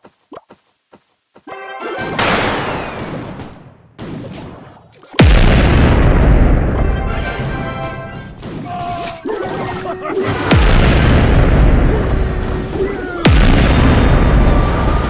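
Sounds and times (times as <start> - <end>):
deep booms with rumbling tails: 10.5 - 15.0.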